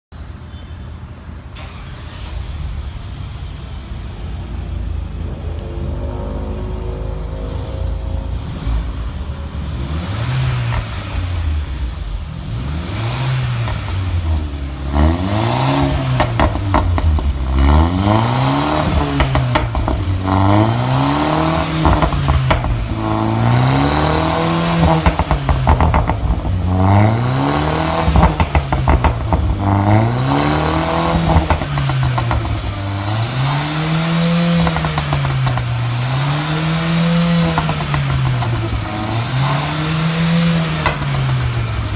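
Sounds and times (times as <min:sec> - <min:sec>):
car engine revving: 0:01.6 - 0:41.9
exhaust pops and crackles: 0:13.4 - 0:41.9.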